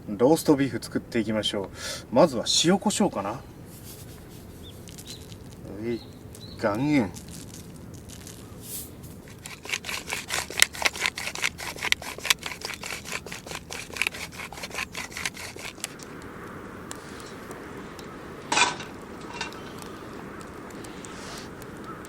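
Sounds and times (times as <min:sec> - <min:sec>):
salt grinder crunching: 0:07.2 - 0:16.0.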